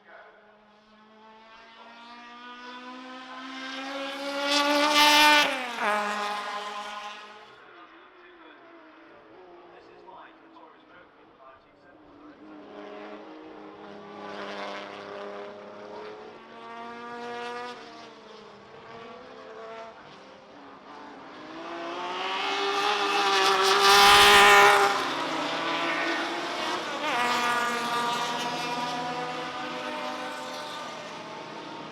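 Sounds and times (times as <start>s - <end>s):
race car engines in distance: 0.4s - 7.6s, 8.5s - 11.0s, 11.9s - 31.9s
race car passing close: 1.1s - 7.5s, 12.1s - 31.9s.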